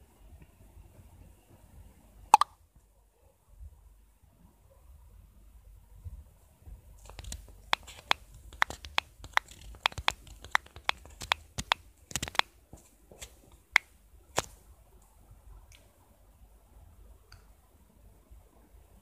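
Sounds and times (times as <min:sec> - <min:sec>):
taps typing on smartphone: 0:07.0 - 0:12.5.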